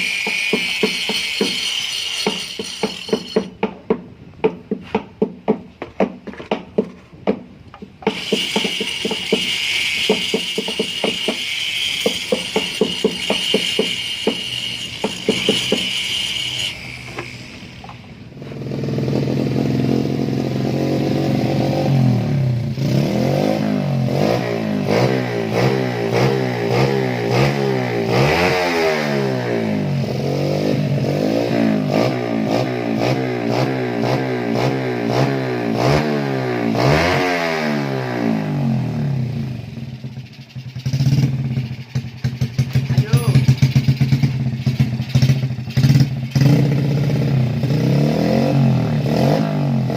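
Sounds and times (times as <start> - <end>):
high-pitched whine with rattle: 0.0 - 3.6, 8.0 - 18.4, 39.2 - 47.6
motorcycle engine revving: 8.0 - 49.9.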